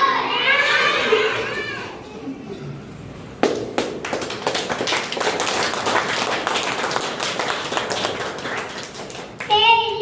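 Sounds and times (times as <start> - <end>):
crowd clapping: 3.4 - 9.6.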